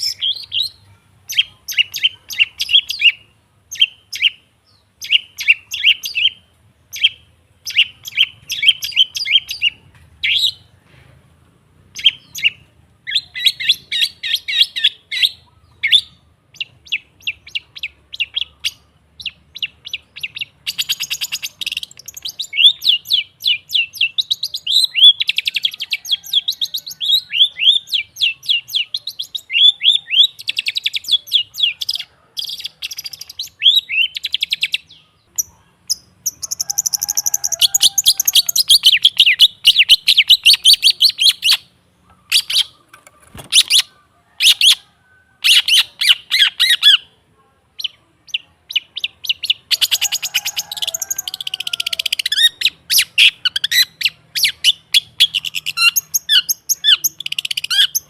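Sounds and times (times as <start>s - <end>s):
bird harsh chattering calls: 11.9s - 44.8s.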